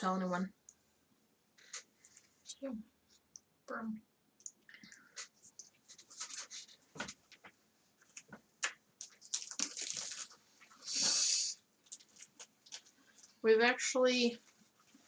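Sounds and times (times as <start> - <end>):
small clicks and rustles: 4.4 - 10.8, 11.8 - 13.4.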